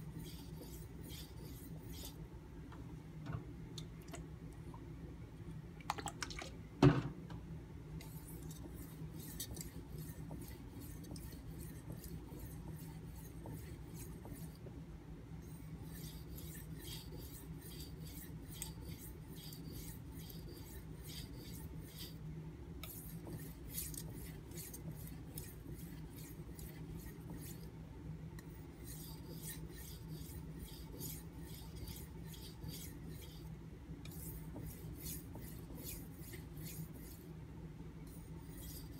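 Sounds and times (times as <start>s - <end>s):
knife scraping on whetstone: 0.1s - 2.2s, 15.5s - 22.2s, 22.8s - 27.7s, 28.4s - 37.2s, 38.1s - 38.9s.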